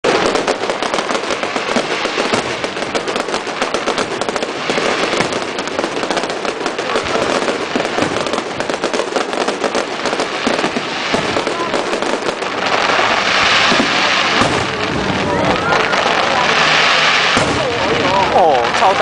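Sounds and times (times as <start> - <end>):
fireworks crackling: 0.0 - 19.0.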